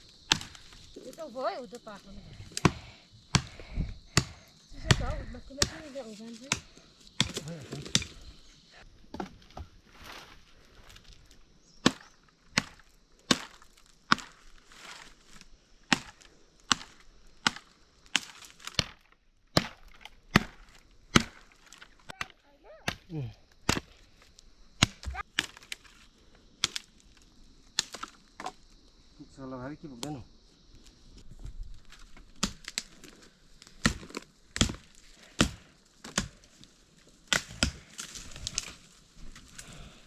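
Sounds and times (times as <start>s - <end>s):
chopping blows on wood: 2.6s - 5.8s.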